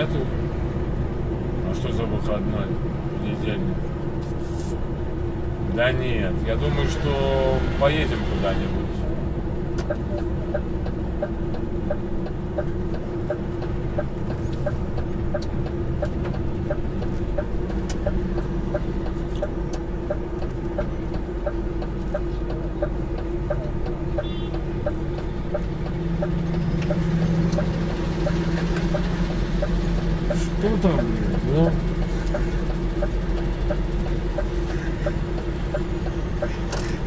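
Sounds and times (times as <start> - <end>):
truck diesel engine running: 0.0 - 37.0
regular ticking: 9.0 - 37.0.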